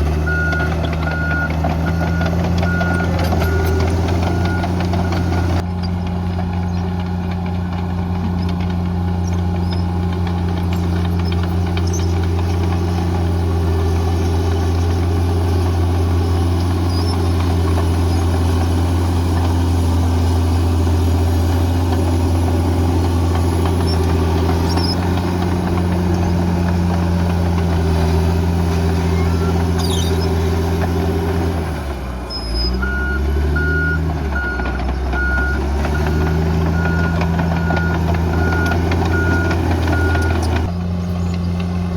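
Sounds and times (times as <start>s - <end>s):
bulldozer diesel engine running: 0.0s - 41.9s
reversing alarm beeping: 0.3s - 5.6s, 32.4s - 40.6s.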